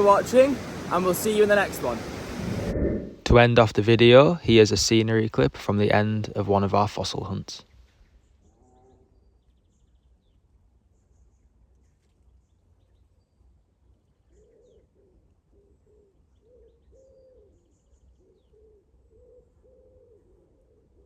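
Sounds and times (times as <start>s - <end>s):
soft low rumble: 2.4s - 6.4s
bird cooing: 14.3s - 21.0s.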